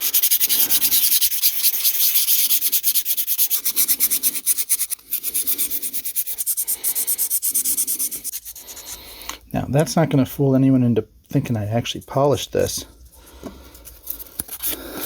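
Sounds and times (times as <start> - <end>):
sandpaper rasping on metal: 0.0 - 9.1.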